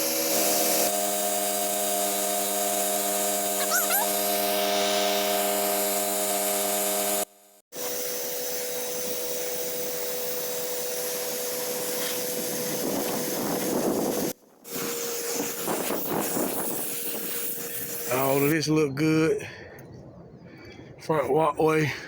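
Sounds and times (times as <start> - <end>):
pressure washer spray rushing: 0.0 - 7.3, 9.2 - 18.5.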